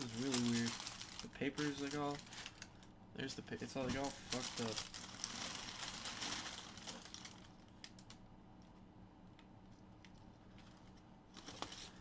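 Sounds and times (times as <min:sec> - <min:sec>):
wrapping paper rustling: 0:00.0 - 0:02.9, 0:03.6 - 0:08.2.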